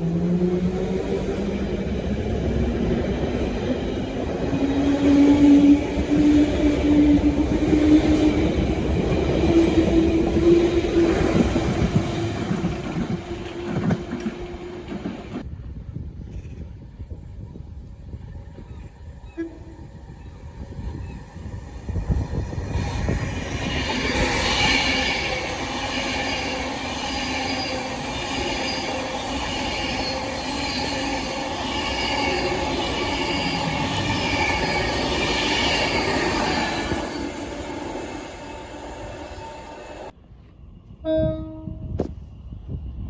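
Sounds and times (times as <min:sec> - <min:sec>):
train running noise: 0:00.0 - 0:43.0
wheels squealing on rails: 0:18.1 - 0:40.2.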